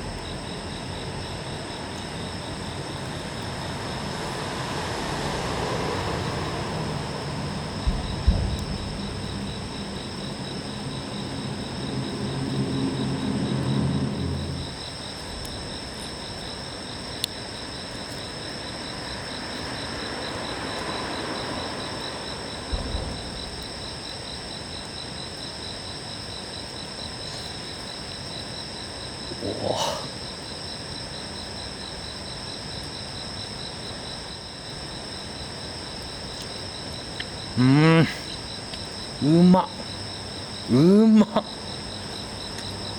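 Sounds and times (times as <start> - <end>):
low droning hum: 0.0 - 19.6
insects chirping: 0.0 - 42.9.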